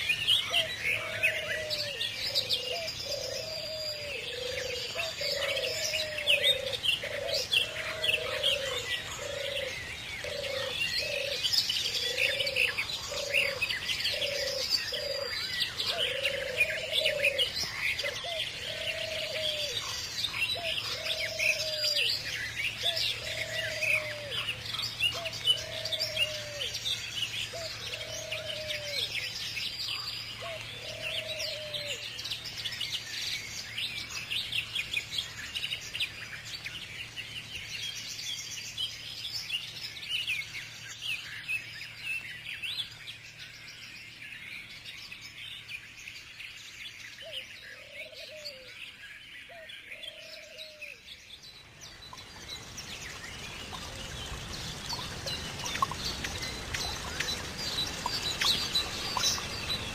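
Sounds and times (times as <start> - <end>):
low arched bird call: 0.0 - 32.2
small birds chirping: 0.0 - 59.9.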